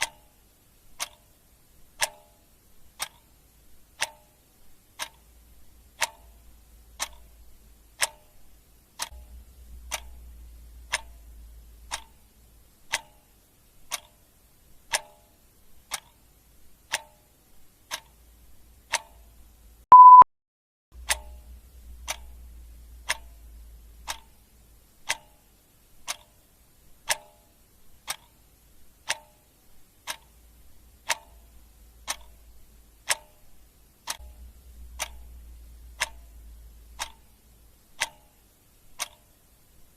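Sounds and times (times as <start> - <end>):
clock ticking: 0.0 - 20.2, 21.0 - 39.9
short high beep: 19.9 - 20.3.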